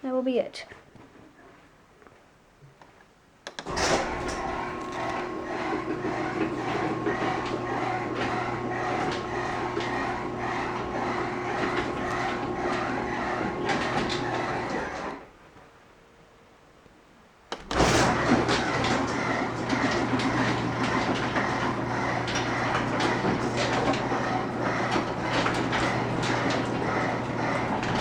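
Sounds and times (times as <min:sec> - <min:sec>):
garage door opener motor hum: 0:03.5 - 0:15.4, 0:17.5 - 0:28.0
rollers rattling in track: 0:03.7 - 0:15.2, 0:17.7 - 0:28.0.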